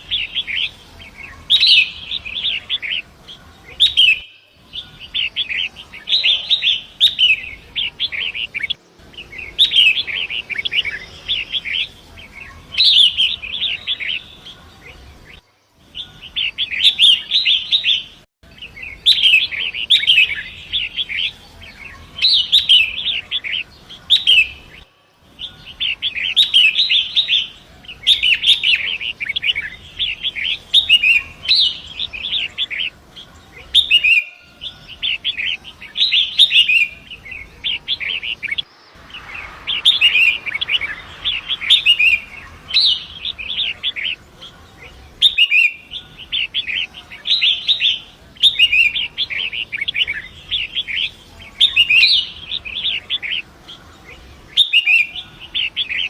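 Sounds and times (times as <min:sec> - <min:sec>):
shrike chattering song: 0:15.9 - 0:56.0
river water rushing: 0:38.6 - 0:44.1.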